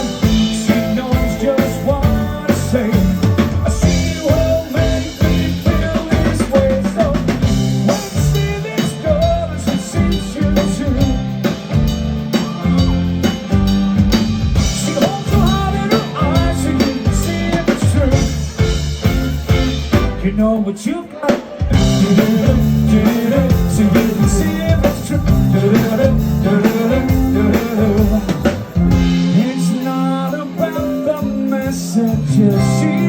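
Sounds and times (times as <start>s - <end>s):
drum kit beat: 0.0s - 33.0s
rock band playing: 0.0s - 33.0s.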